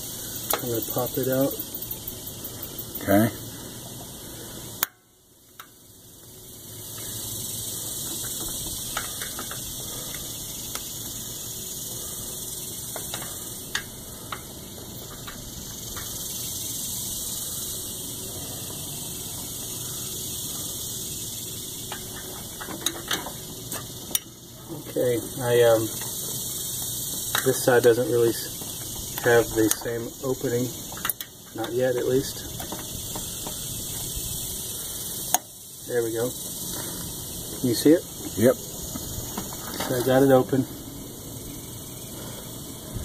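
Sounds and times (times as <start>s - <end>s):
steady hiss and hum: 0.0s - 43.0s
hand tools tapping on metal: 0.4s - 3.1s, 8.0s - 11.2s, 12.9s - 16.2s, 21.8s - 24.4s, 25.8s - 34.2s, 35.2s - 35.5s.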